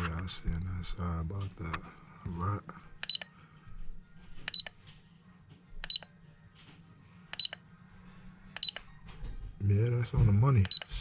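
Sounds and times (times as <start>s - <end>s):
battery checker beeping: 7.3s - 7.6s, 8.6s - 8.8s, 10.6s - 11.0s.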